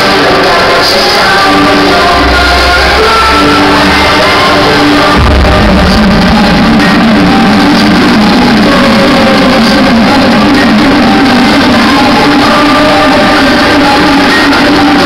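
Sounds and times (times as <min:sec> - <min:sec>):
loud dance music: 0:00.0 - 0:15.0
heavy bass line: 0:01.4 - 0:15.0.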